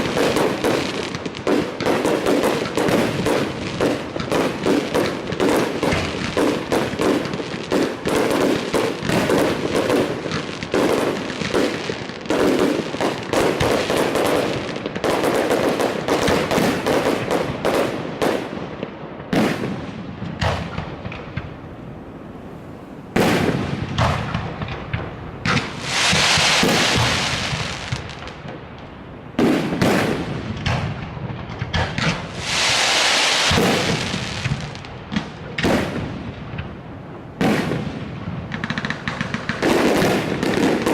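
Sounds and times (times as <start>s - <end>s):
fireworks bursts and bangs: 0.0s - 21.6s, 23.1s - 36.8s, 37.4s - 40.9s
fireworks crackling hisses: 25.5s - 28.5s, 31.9s - 36.2s.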